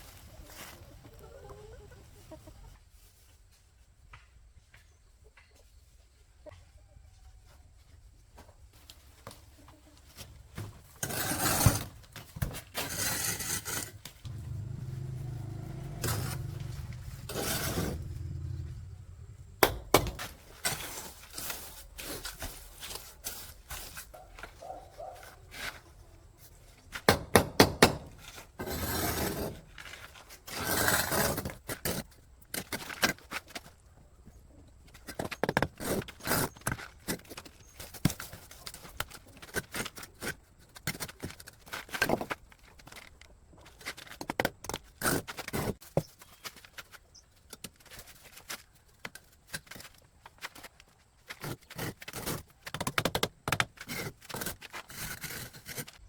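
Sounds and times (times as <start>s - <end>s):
objects scraping: 10.6s - 19.5s.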